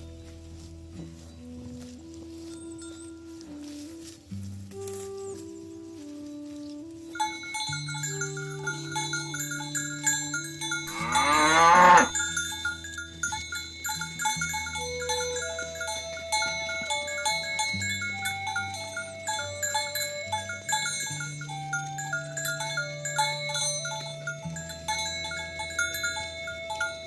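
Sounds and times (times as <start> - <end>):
bell-like background music: 0.0 - 27.0
cow mooing: 10.7 - 12.2.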